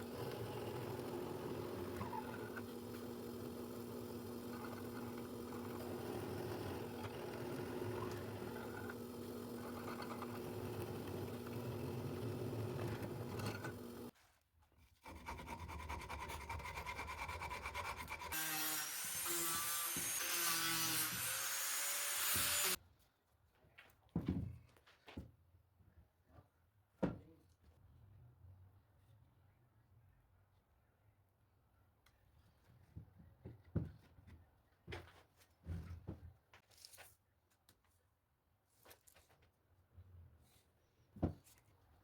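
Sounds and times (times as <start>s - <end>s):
woodworking tools cutting wood: 0.0s - 14.1s, 15.0s - 22.8s
rising power tool whine: 18.4s - 22.8s.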